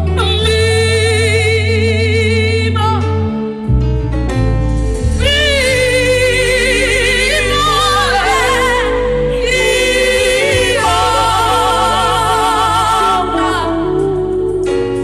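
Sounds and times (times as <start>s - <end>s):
sustained accompaniment with deep bass: 0.0s - 15.0s
person singing with vibrato: 5.1s - 15.0s.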